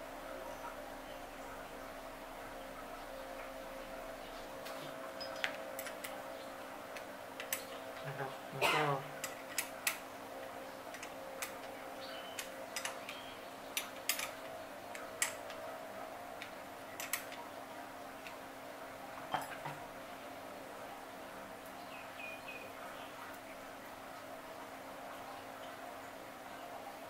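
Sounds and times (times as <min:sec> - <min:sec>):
faint steady hum: 0:00.0 - 0:27.0
metallic clicks and taps: 0:06.9 - 0:07.8, 0:09.2 - 0:15.6, 0:16.4 - 0:17.4.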